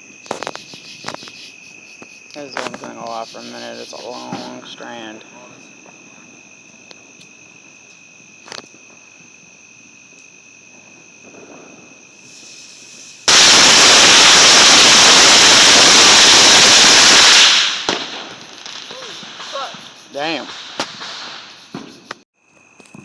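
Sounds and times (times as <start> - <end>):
firecrackers crackling: 0.0 - 3.0, 10.7 - 22.2
high insect trill: 0.0 - 23.0.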